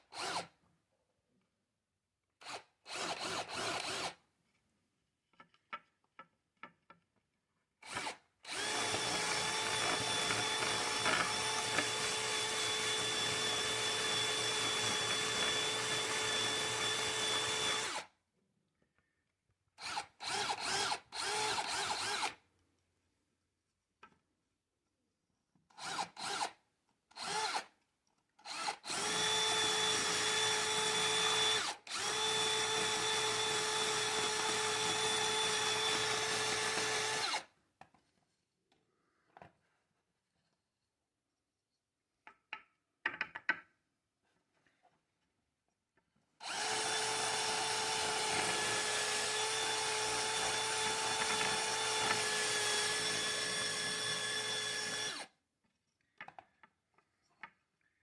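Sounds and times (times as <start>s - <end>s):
electric drill whining: 0.1s - 0.5s, 2.4s - 4.2s, 7.8s - 18.1s, 19.8s - 22.4s, 25.8s - 26.6s, 27.2s - 27.7s, 28.4s - 37.5s, 46.4s - 55.3s.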